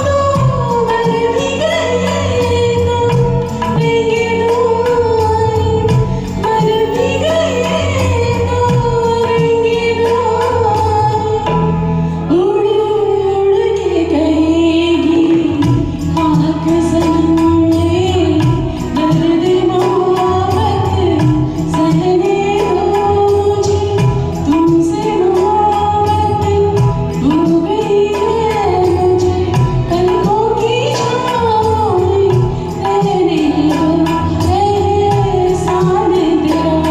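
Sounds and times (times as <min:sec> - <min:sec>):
woman singing: 0:00.0 - 0:36.9
backing track with bass and beat: 0:15.2 - 0:36.9.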